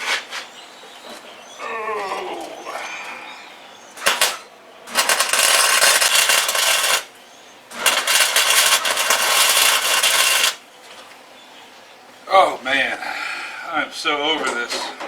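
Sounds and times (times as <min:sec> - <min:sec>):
welder crackling: 0:04.0 - 0:10.7.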